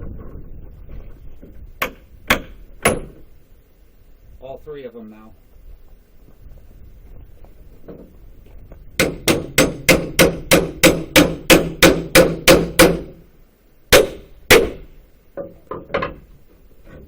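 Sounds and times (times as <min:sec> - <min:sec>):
hammer striking wooden board: 0:01.8 - 0:03.2, 0:09.0 - 0:13.2, 0:13.9 - 0:16.2.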